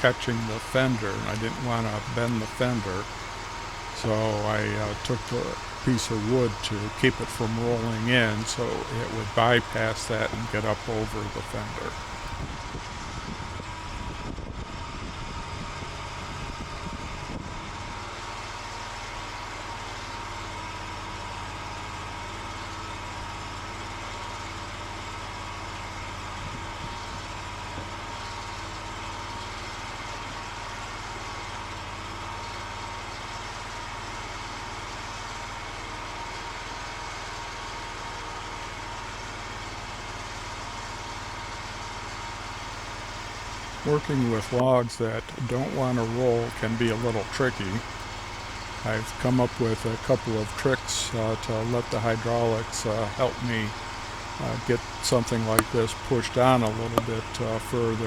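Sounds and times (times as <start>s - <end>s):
constant high tone: 0.0s - 12.4s, 42.6s - 58.0s
sawmill engine running: 0.0s - 12.5s, 42.5s - 58.0s.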